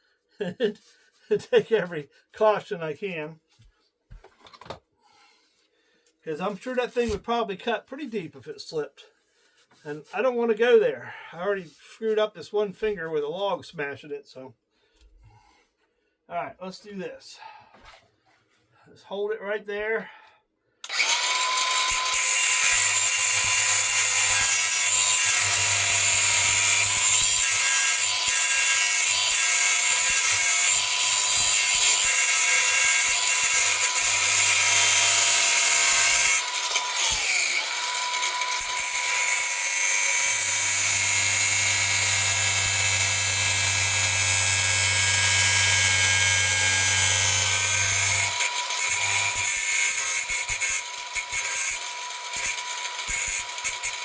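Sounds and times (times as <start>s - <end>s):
electric grinder grinding metal: 20.9s - 54.0s.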